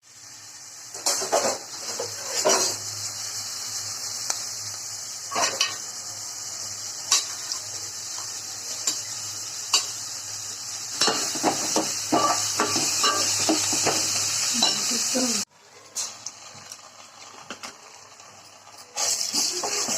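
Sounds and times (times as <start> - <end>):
food sizzling in a pan: 0.0 - 19.9
spoon scraping and knocking pan: 1.0 - 2.8, 11.0 - 14.9, 18.9 - 19.9.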